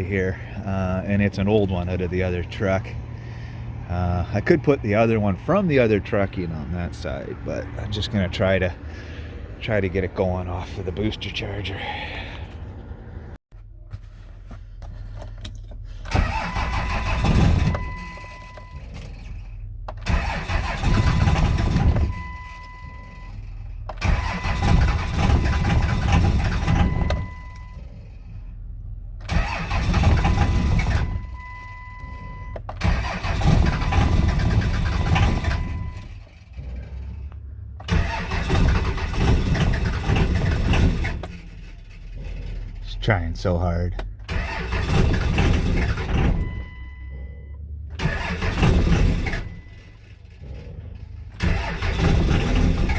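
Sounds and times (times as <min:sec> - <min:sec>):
diesel engine starter cranking: 0:14.7 - 0:43.3, 0:43.9 - 0:47.2, 0:47.8 - 0:52.9.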